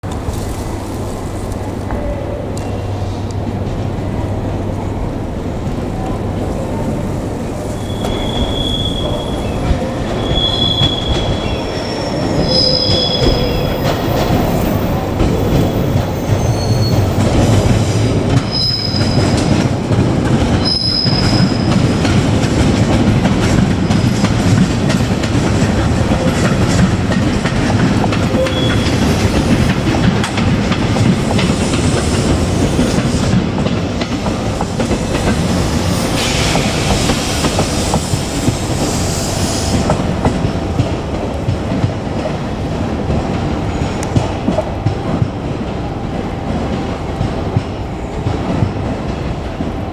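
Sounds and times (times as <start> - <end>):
electric train rumbling on rails: 0.0 - 49.9
high wheel squeals: 7.6 - 14.9, 16.1 - 17.2, 18.5 - 19.4, 28.3 - 29.5.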